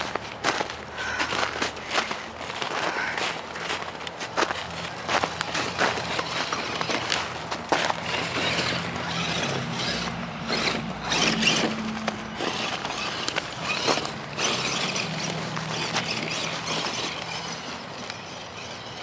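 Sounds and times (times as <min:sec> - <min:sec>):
tires crunching over ground: 0:00.0 - 0:19.0
electric motor whining: 0:04.0 - 0:19.0.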